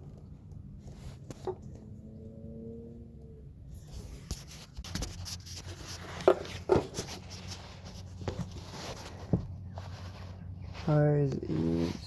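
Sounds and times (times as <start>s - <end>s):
hose scraping and rubbing: 3.8s - 12.0s.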